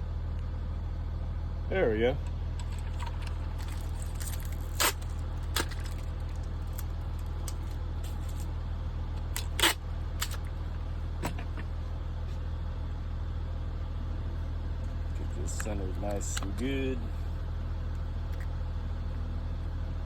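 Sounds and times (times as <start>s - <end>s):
steady low hum: 0.0s - 20.0s
packing tape: 2.6s - 8.5s, 9.2s - 10.6s.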